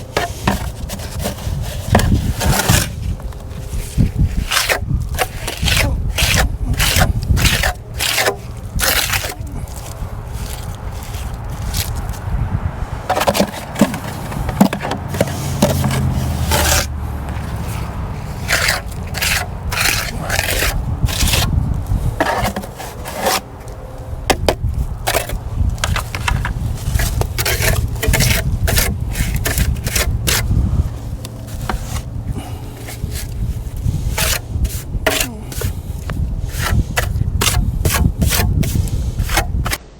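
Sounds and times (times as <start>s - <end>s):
hand tool scraping concrete: 0.0s - 12.2s, 13.0s - 23.7s, 24.3s - 39.8s.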